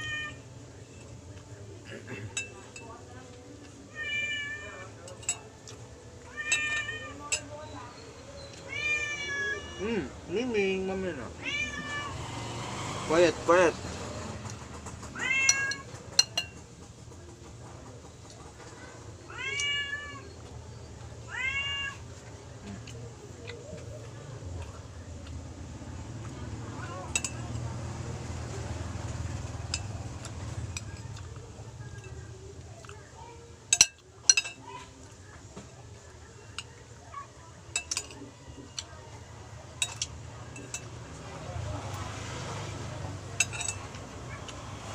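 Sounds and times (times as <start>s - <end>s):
cutlery clinking on a plate: 2.1s - 3.0s, 5.0s - 5.8s, 15.2s - 16.6s, 27.1s - 27.6s, 33.7s - 34.7s, 37.7s - 38.9s, 39.8s - 41.0s, 43.4s - 44.0s
cat meowing: 6.3s - 7.4s, 8.6s - 10.1s, 11.3s - 12.2s, 15.1s - 15.9s, 19.3s - 20.3s, 21.3s - 22.1s.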